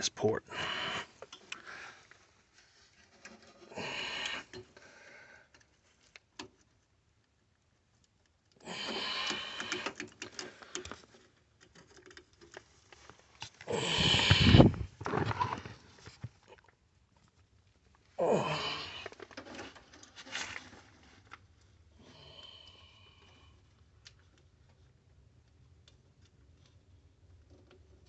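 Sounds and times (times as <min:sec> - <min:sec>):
wire scratching and rubbing in port: 0:02.5 - 0:04.6.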